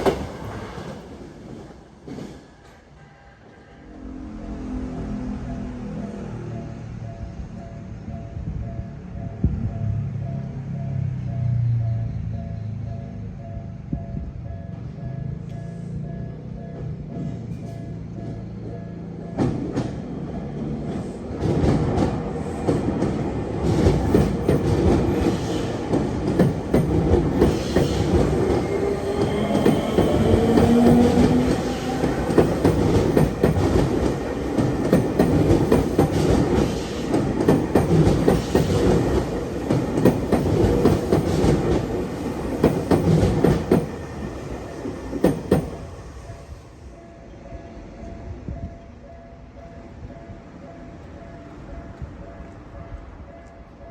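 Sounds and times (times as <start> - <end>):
electric train passing: 0.0 - 53.9
train wheels clacking over rail joints: 19.2 - 45.9.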